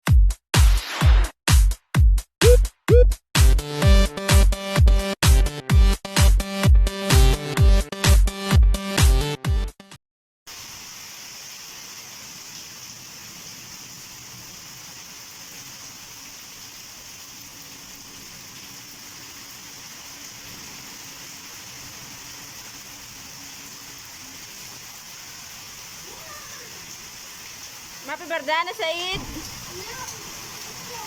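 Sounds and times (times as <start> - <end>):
heavy rain hissing: 10.5 - 31.0.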